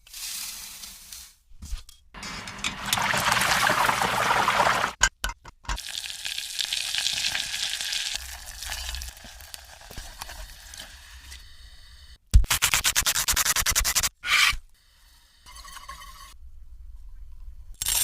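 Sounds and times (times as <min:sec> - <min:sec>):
food sizzling in a pan: 0:05.8 - 0:11.0.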